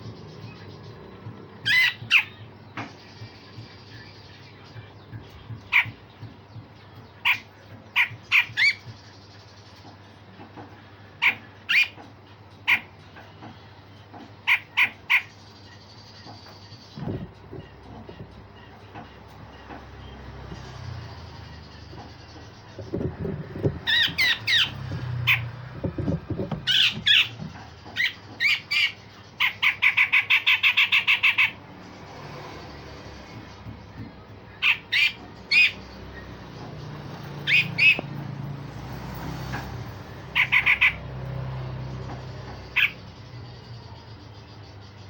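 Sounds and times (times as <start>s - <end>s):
bird squawking: 1.6s - 2.5s, 5.6s - 6.0s, 7.2s - 8.8s, 11.2s - 12.0s, 12.6s - 13.0s, 14.4s - 15.4s, 23.8s - 31.6s, 34.5s - 35.8s, 37.4s - 38.1s, 40.2s - 41.2s, 42.7s - 43.0s
fast run of bird notes: 19.4s - 44.0s.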